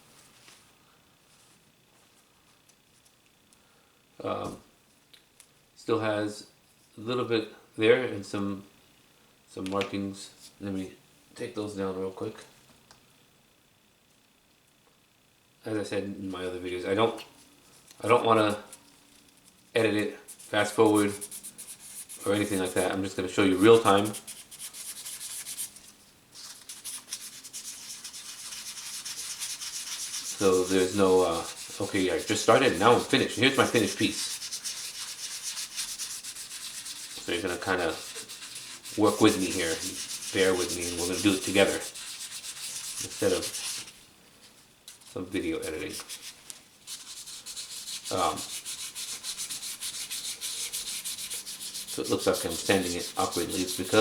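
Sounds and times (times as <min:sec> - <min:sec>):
sandpaper scratching on metal: 0:20.3 - 0:25.7, 0:26.7 - 0:43.9, 0:45.6 - 0:54.0.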